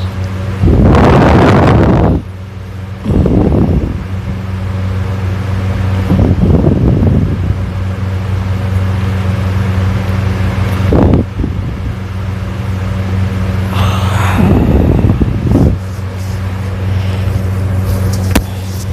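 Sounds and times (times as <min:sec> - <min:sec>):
low hum: 0:00.0 - 0:18.9
person snoring loudly: 0:13.7 - 0:15.9.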